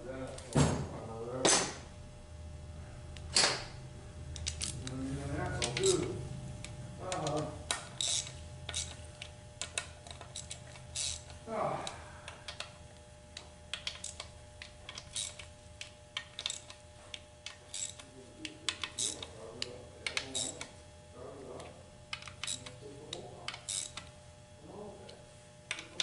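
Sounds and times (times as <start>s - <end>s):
faint low mumbling: 11.4s - 12.4s
hand tools and metal parts clinking: 16.2s - 16.8s.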